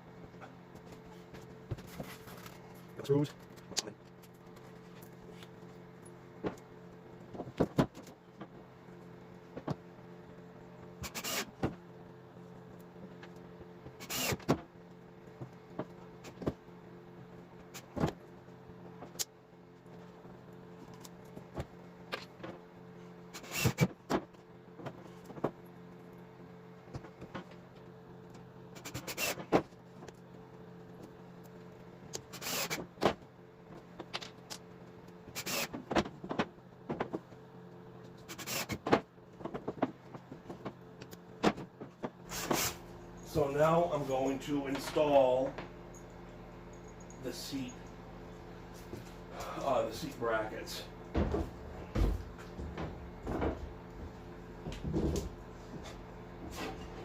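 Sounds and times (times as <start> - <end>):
cordless drill driving screws: 11.0 - 11.5, 14.0 - 14.5, 23.4 - 23.9, 28.9 - 29.4, 32.3 - 32.8, 35.4 - 35.7, 38.4 - 38.8.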